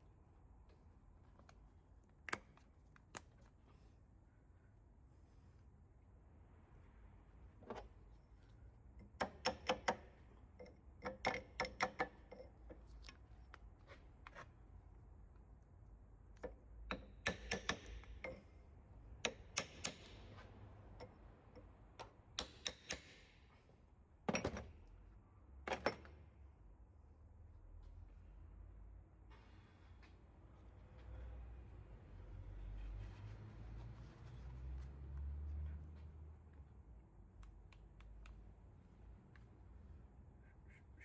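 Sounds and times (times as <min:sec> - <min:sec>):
sharp metallic clicks and taps: 0:09.0 - 0:13.2, 0:16.3 - 0:18.4, 0:19.2 - 0:23.2, 0:37.3 - 0:38.5.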